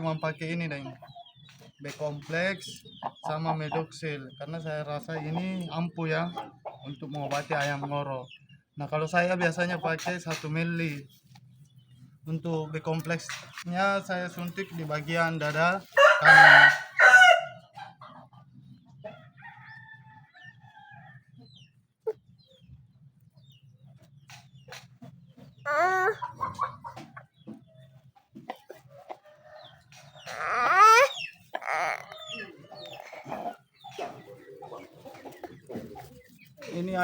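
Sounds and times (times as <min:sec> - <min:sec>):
chickens calling: 0:00.0 - 0:37.0
rooster crowing: 0:16.0 - 0:17.6.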